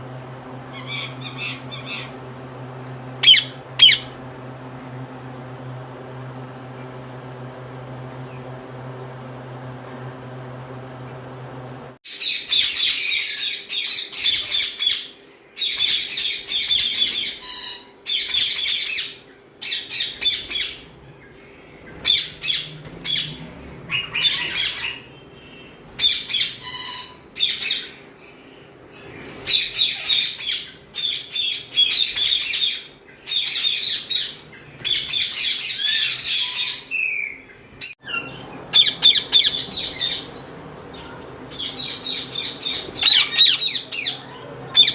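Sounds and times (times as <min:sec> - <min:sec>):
parakeets squawking: 0:00.7 - 0:02.2, 0:03.2 - 0:04.2, 0:12.1 - 0:44.9.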